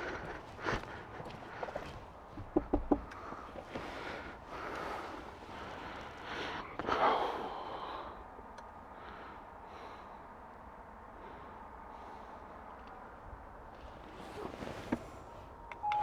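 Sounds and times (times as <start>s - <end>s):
person breathing: 0.0s - 2.0s, 3.1s - 8.2s.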